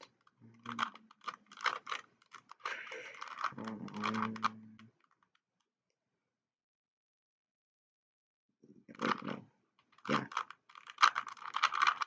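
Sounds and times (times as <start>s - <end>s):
plastic puzzle cube clicking: 0.0s - 5.4s, 8.9s - 12.0s.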